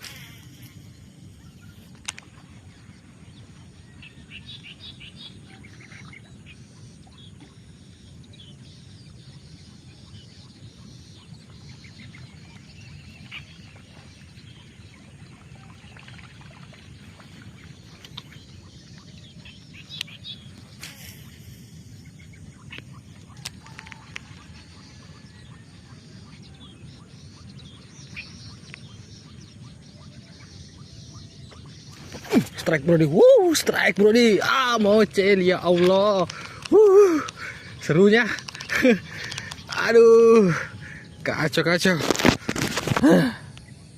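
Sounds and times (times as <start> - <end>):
bird chirps: 0.0 - 43.9
sharp clicks: 38.2 - 39.8.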